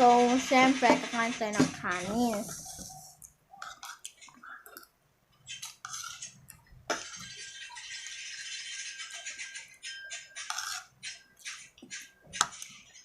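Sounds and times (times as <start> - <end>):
utensil scraping: 5.5 - 6.4.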